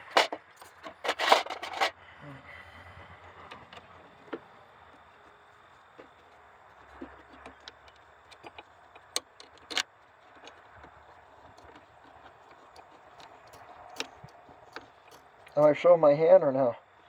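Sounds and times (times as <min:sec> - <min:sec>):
hand tools clicking and clinking: 0:00.0 - 0:02.0, 0:05.8 - 0:15.8.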